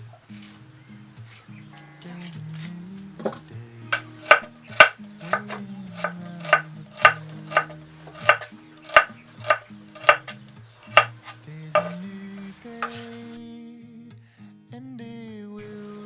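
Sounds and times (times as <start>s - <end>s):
background music: 0.0s - 13.8s
knife chopping on cutting board: 4.0s - 12.0s.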